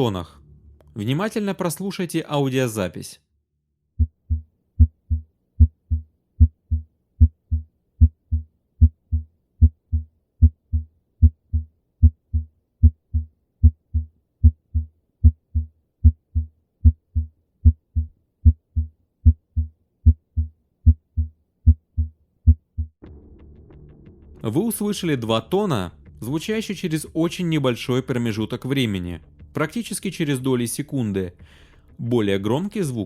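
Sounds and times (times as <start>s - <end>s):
heartbeat low thuds: 4.0s - 23.0s.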